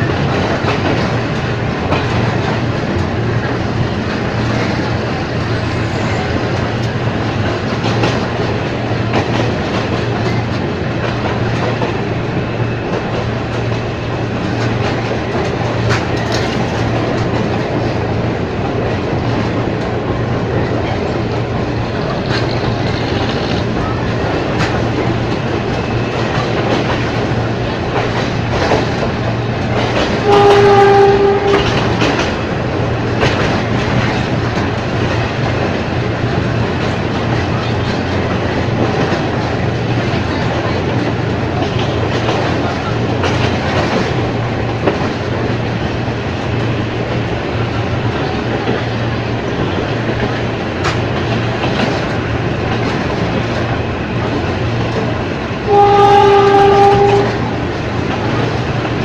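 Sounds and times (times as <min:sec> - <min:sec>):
train running noise: 0:00.0 - 0:59.0
train horn blast: 0:30.2 - 0:32.1, 0:55.7 - 0:57.5.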